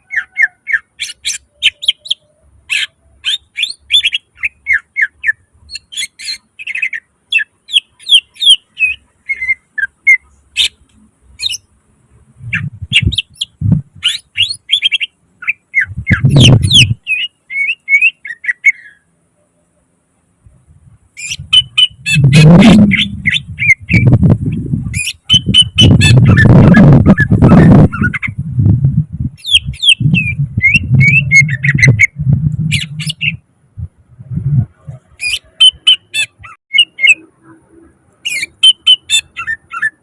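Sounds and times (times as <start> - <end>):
bird singing chirps and trills: 0.0 - 11.8, 12.4 - 19.7, 21.2 - 28.5, 29.3 - 33.4, 34.5 - 37.6, 38.2 - 40.0
low rumbling thuds: 30.0 - 35.0.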